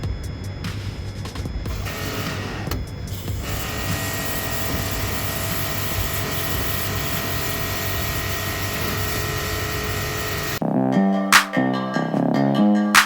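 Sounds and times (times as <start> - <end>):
pressure washer hissing: 1.7 - 10.6.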